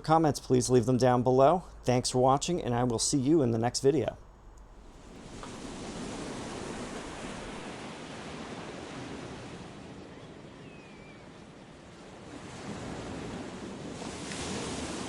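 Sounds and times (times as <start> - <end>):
steady rushing noise: 0.1 - 8.0.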